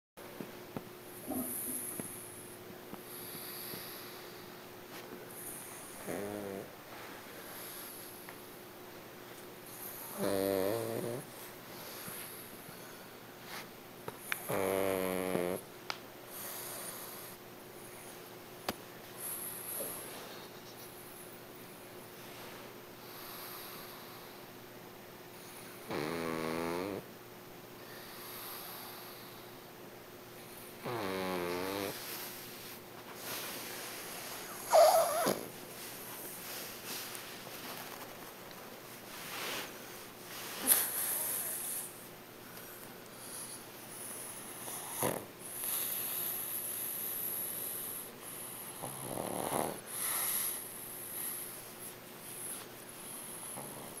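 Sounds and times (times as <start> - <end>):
faint breathing: 3.0 - 6.1, 22.2 - 24.5, 49.8 - 54.0
pet snoring: 5.4 - 6.7, 9.7 - 12.2, 14.2 - 15.7, 25.8 - 27.1, 30.8 - 32.7, 34.4 - 35.6, 43.2 - 51.5, 52.2 - 54.0.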